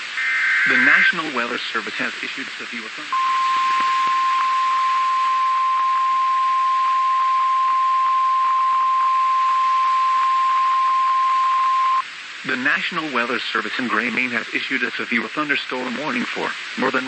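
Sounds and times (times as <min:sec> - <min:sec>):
radio static hiss and crackle: 0:00.0 - 0:17.0
steady high alarm tone: 0:00.2 - 0:01.2, 0:03.1 - 0:12.0.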